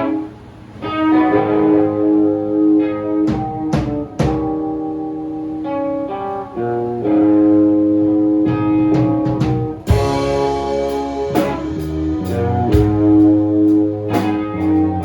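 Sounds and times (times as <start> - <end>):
band music: 0.0 - 15.0
guitar chords: 0.0 - 15.0
drum and cymbal hits: 9.2 - 14.9.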